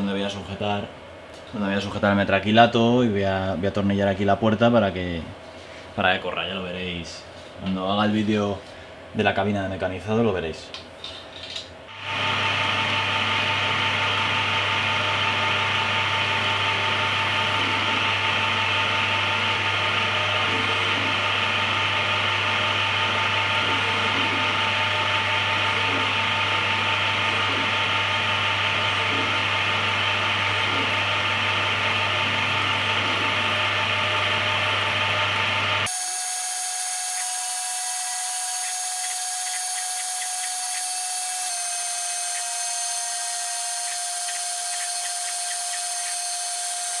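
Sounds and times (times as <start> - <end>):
lathe motors whining: 12.0 - 47.0.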